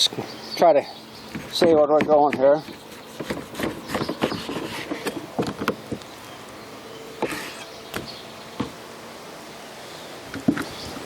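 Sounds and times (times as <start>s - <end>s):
knife cutting meat: 1.4s - 5.2s, 7.2s - 7.7s.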